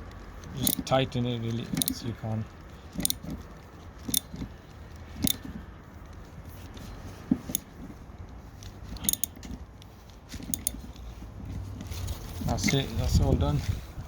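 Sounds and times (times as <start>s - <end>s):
socket tool metallic clicks: 1.7s - 2.0s, 3.0s - 3.3s, 4.1s - 4.4s, 9.0s - 9.4s, 10.4s - 10.8s.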